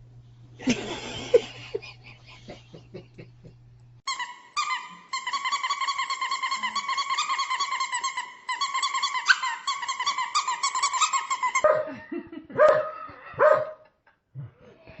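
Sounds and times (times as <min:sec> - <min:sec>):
dog yipping: 0:04.1 - 0:11.9, 0:12.6 - 0:13.8
dog barking: 0:11.6 - 0:13.9.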